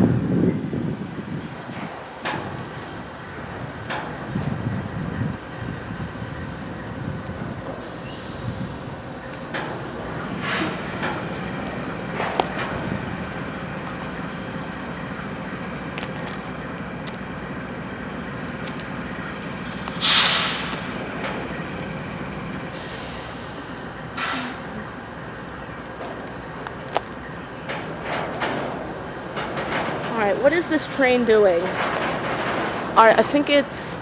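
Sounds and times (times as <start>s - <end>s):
diesel locomotives idling: 0.0s - 34.0s
air brakes hissing: 7.6s - 12.3s, 19.6s - 21.4s, 22.6s - 24.9s.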